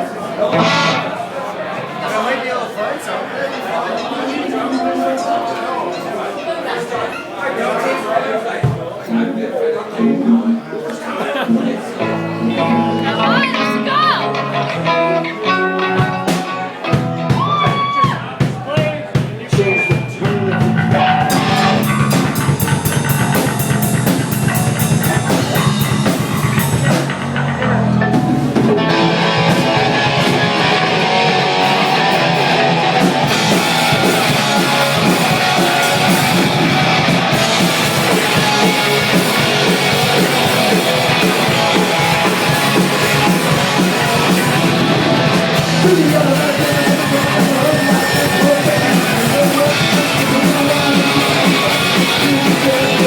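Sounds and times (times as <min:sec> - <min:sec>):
drum kit: 0:00.5 - 0:01.1, 0:15.4 - 0:53.0
electric guitar: 0:00.5 - 0:01.3, 0:11.4 - 0:18.2, 0:19.7 - 0:53.0
person singing: 0:19.5 - 0:23.8, 0:27.7 - 0:53.0.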